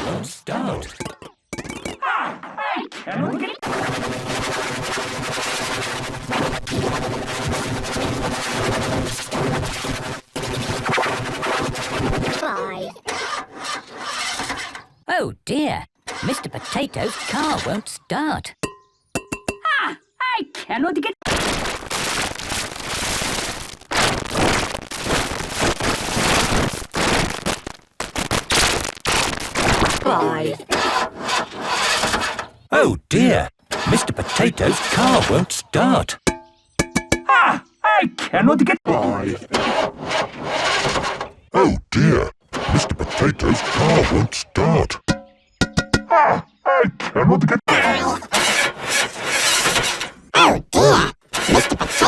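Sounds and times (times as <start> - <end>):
harsh distorted noise: 3.6 - 12.5, 21.2 - 30.1, 42.0 - 45.0, 47.7 - 52.0
sharp cracks: 21.3 - 30.1.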